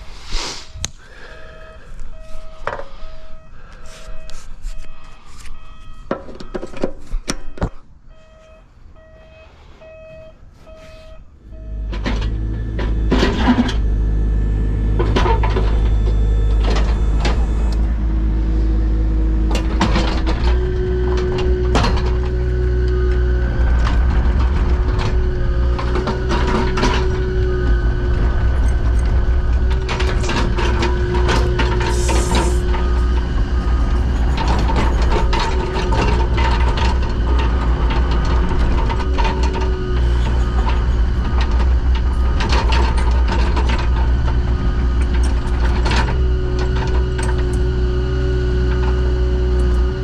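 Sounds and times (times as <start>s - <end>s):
diesel earthmover engine running: 0.7s - 6.7s, 9.8s - 50.0s
repeating beep: 1.5s - 6.6s, 7.4s - 11.8s
machine clanking: 11.9s - 50.0s.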